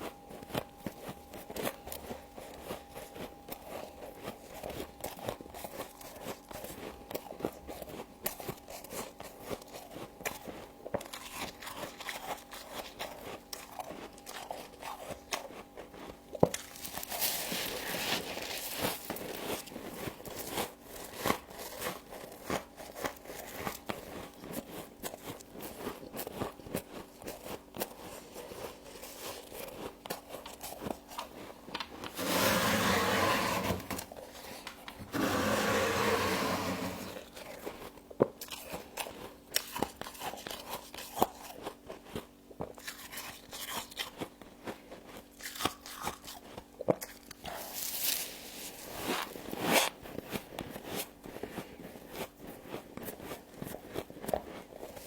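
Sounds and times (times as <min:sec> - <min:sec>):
frost crunching while chewed: 0:00.0 - 0:32.2, 0:37.2 - 0:55.0.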